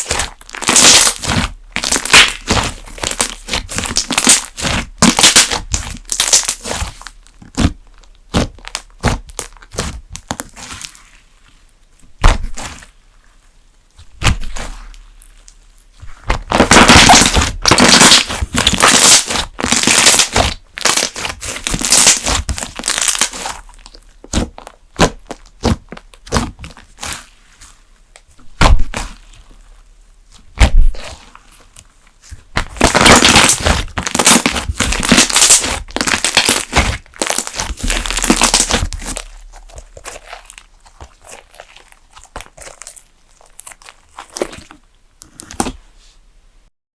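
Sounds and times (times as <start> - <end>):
slime popping and crackling: 0.0 - 11.2, 12.1 - 13.0, 13.9 - 29.7, 30.3 - 45.8.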